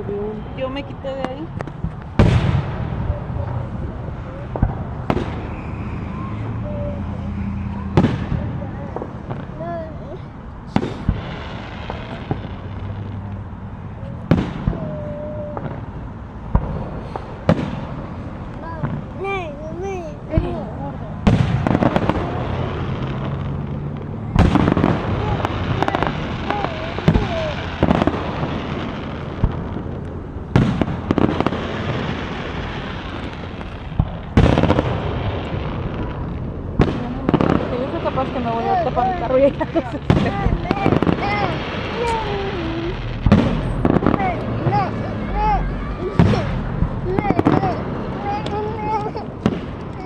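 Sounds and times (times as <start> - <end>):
fireworks going off: 0.0 - 50.0
fireworks sharp bangs: 0.0 - 50.0.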